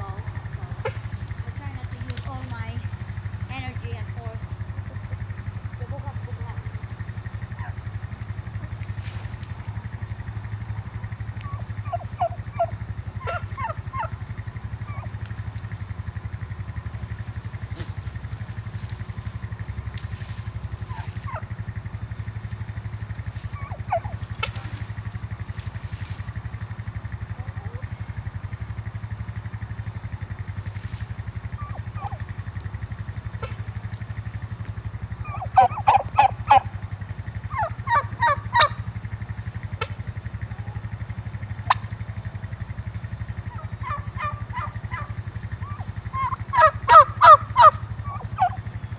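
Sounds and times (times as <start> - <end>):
low hum: 0.0 - 48.9
poultry calling: 6.3 - 26.5, 30.2 - 40.5, 41.5 - 48.9.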